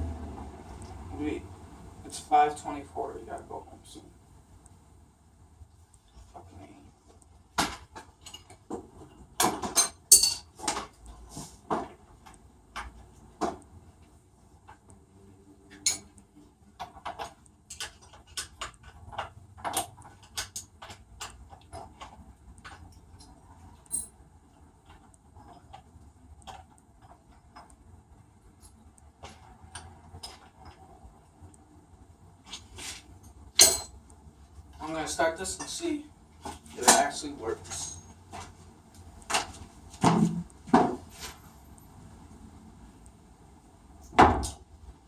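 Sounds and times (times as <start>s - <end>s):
hand tools clinking on metal: 9.7s - 10.5s, 33.6s - 34.0s, 36.8s - 38.1s.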